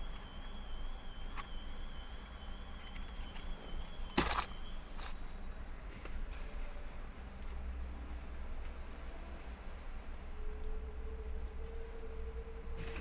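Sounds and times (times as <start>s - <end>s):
low steady hum: 0.0s - 13.0s
wrap crinkling: 4.1s - 5.2s.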